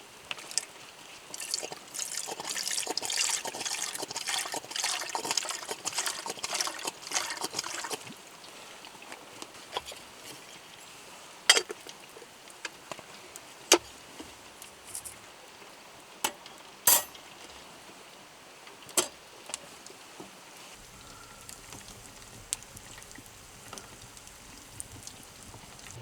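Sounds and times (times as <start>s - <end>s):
campfire crackling and popping: 20.8s - 26.0s
stream rushing: 20.8s - 26.0s.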